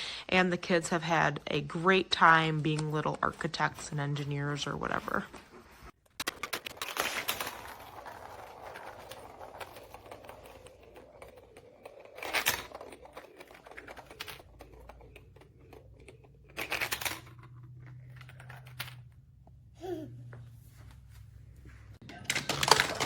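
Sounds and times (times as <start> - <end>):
plastic tiles and marbles clattering: 6.0 - 19.4, 22.1 - 23.0.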